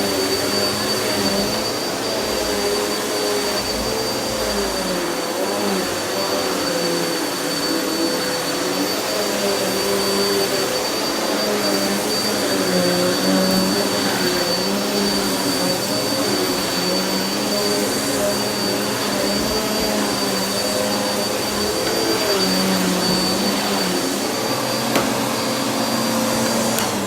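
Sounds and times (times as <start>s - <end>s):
vacuum cleaner running: 0.0s - 27.0s
thin high whine: 5.8s - 27.0s.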